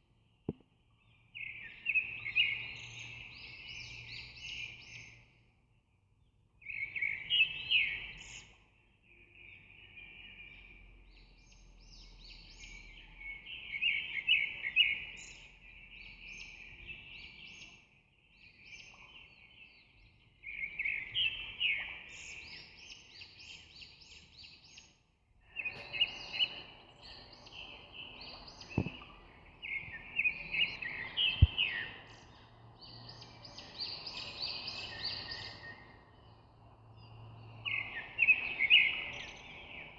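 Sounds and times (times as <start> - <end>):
birds chirping: 16.0 - 39.9.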